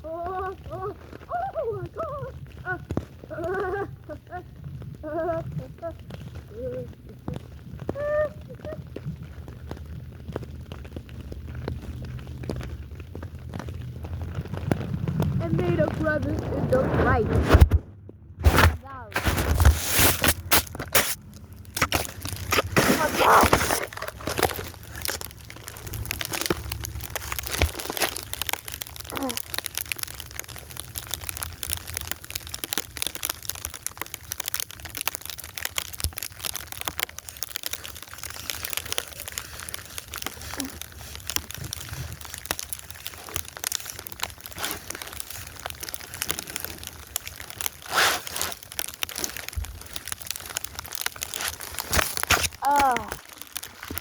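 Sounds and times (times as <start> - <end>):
snow crunching: 0.0 - 17.8, 18.4 - 33.3, 35.7 - 54.0.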